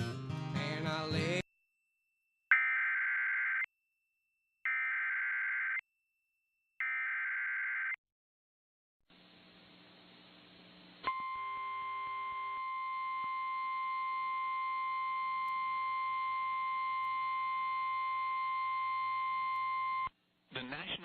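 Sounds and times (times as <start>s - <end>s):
faint hiss and hum: 9.1s - 11.0s.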